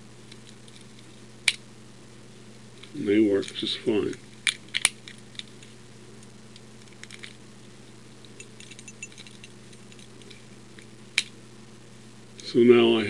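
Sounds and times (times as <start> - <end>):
lock and keys clinking: 8.3 - 10.2.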